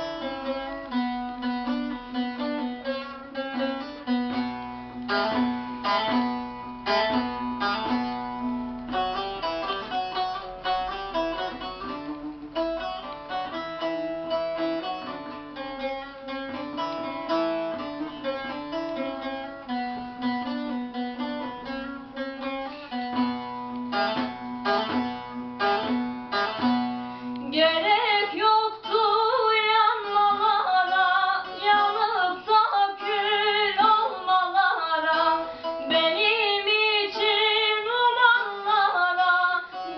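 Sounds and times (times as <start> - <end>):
plucked guitar: 0.0 - 39.9
woman singing: 27.4 - 39.9.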